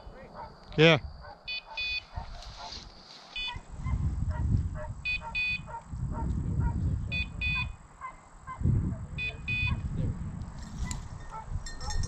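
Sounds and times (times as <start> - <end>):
beeper collar double beeps: 1.5 - 2.0, 5.0 - 5.7, 7.1 - 7.8, 9.2 - 9.8.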